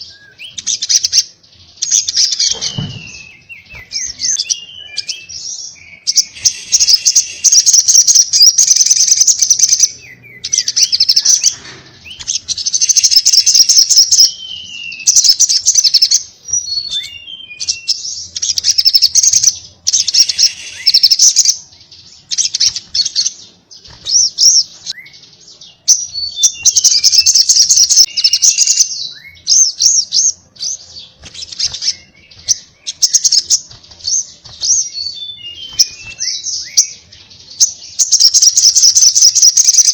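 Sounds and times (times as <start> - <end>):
sunbird high-pitched chattering: 0.0 - 16.2, 16.8 - 23.4, 26.3 - 30.4, 31.2 - 37.0, 37.6 - 39.9
downward-sliding bird chirps: 1.8 - 21.6, 26.2 - 37.0.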